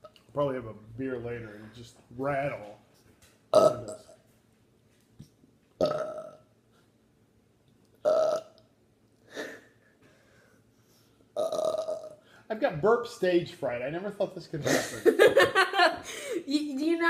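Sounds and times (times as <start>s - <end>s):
person burping: 3.5s - 4.2s, 5.8s - 6.4s, 8.0s - 8.6s, 11.4s - 12.2s.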